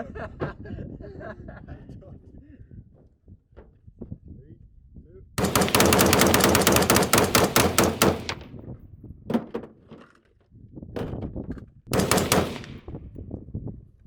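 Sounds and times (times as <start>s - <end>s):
rapid gunfire: 5.4s - 8.5s, 11.9s - 12.9s.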